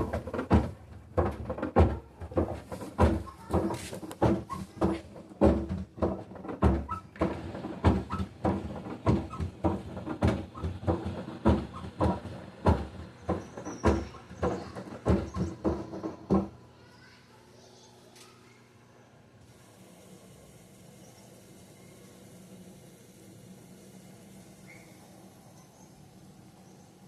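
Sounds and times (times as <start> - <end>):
washer drum knocking and clunking: 0.0 - 16.6.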